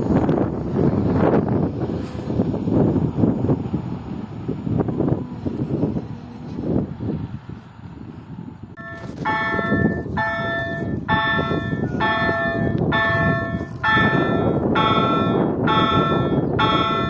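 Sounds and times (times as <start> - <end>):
train rumbling: 0.0 - 17.0
level crossing warning bell: 8.8 - 17.0.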